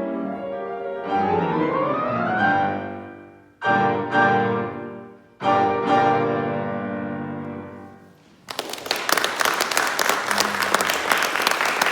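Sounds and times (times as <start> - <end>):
audience applause: 8.4 - 11.9.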